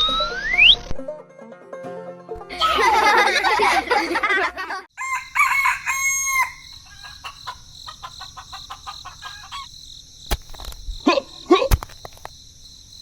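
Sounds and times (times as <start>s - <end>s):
rooster crowing: 4.9s - 9.7s.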